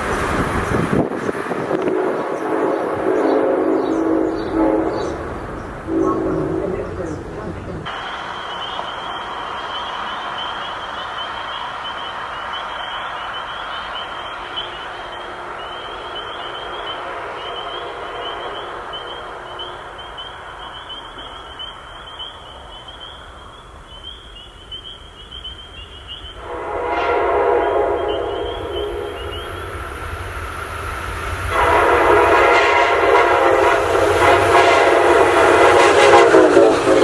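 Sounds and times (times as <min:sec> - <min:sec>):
train rumbling past: 0:00.0 - 0:37.0
locomotive air horn chord: 0:01.6 - 0:08.4, 0:16.6 - 0:19.7, 0:26.4 - 0:29.8, 0:31.4 - 0:37.0.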